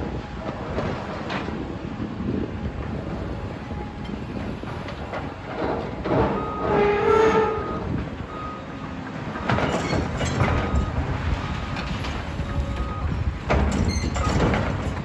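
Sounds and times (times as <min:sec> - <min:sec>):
demolition machinery rumbling: 0:00.0 - 0:15.0
metallic squeal: 0:05.6 - 0:08.5.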